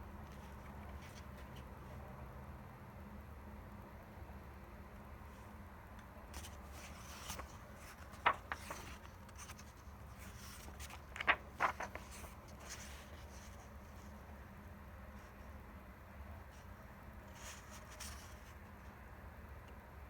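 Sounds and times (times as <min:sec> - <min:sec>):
faint steady hum: 0:00.0 - 0:20.0
paper pages rustling: 0:00.3 - 0:01.7, 0:06.4 - 0:14.2, 0:17.4 - 0:18.6.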